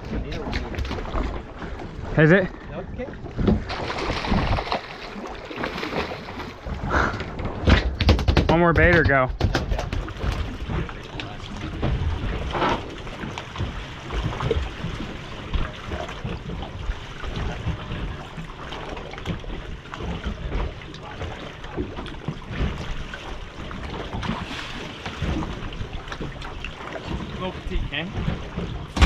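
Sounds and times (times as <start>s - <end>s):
water sloshing against hull: 0.0s - 29.0s
knocks and thumps: 3.3s - 4.8s, 6.7s - 10.9s.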